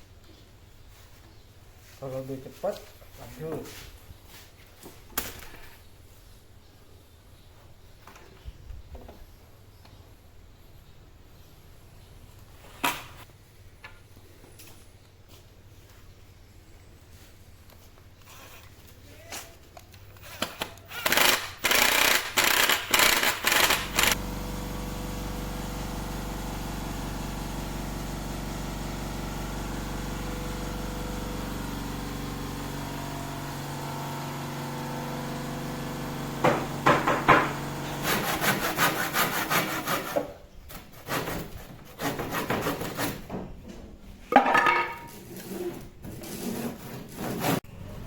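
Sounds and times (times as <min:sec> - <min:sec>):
machine humming: 0:23.4 - 0:38.4
sharp knocks: 0:36.4 - 0:37.6
scraping and rubbing on wood: 0:44.8 - 0:47.6.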